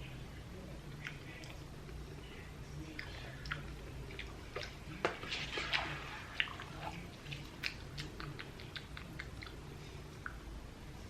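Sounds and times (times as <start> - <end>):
person chewing noodles: 6.3 - 10.4.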